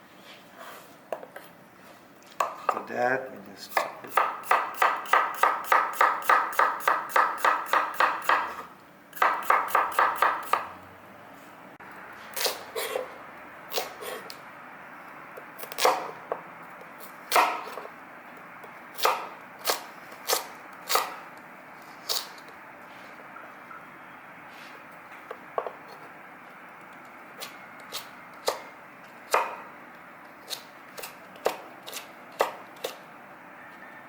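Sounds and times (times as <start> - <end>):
knife chopping on cutting board: 3.7 - 10.7, 15.6 - 16.4, 17.3 - 17.9, 19.0 - 21.2, 29.3 - 29.7, 30.5 - 33.0.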